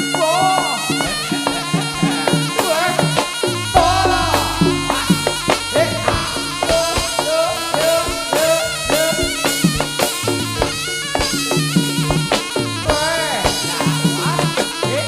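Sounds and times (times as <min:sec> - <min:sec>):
reed wind instrument melody: 0:01.0 - 0:13.8
hand drum strokes: 0:03.7 - 0:09.2
low gong chime notes: 0:03.8 - 0:08.4.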